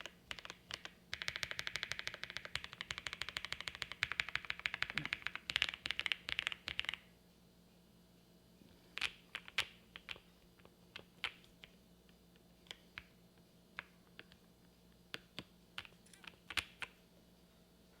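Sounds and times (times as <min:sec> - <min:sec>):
mechanical keyboard typing: 0:00.0 - 0:07.0.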